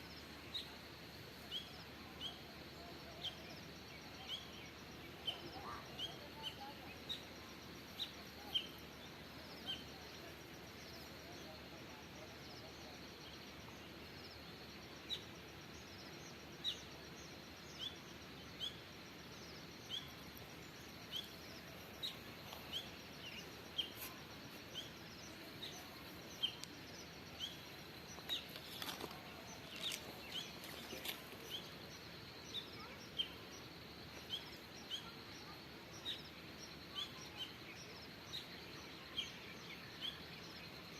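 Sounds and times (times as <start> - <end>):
outdoor background hiss: 0.0 - 40.9
bird chirping: 19.6 - 40.9.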